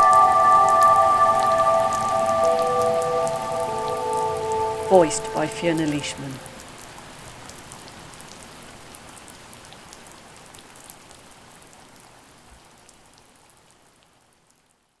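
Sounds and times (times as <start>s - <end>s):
rain hissing: 0.0s - 7.0s.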